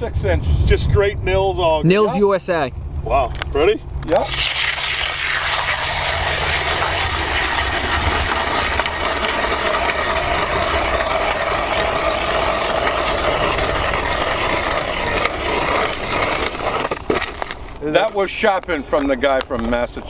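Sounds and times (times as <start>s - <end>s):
hand ice auger grinding ice: 4.2s - 18.4s.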